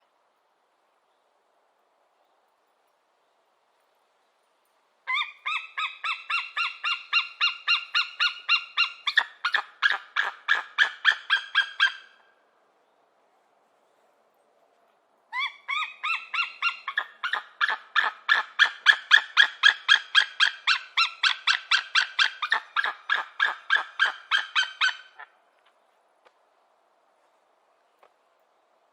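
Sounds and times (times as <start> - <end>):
eagle piping call: 5.1 - 12.2, 15.3 - 25.3.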